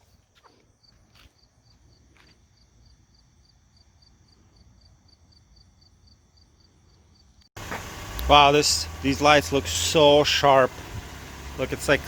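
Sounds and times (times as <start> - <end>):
cricket chirping: 0.0 - 7.5.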